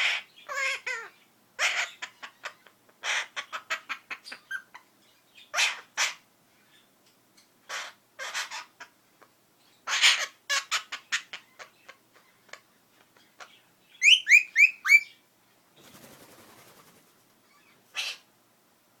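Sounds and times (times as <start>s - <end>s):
parakeet calling: 0.0s - 6.8s, 7.6s - 8.9s, 9.7s - 12.6s, 13.4s - 15.2s, 17.5s - 18.3s.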